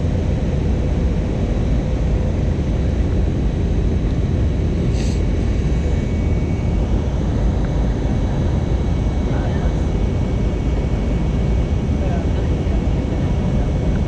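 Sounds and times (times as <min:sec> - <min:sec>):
airliner cabin engine noise: 0:00.0 - 0:14.0
brief high hiss: 0:04.9 - 0:05.2.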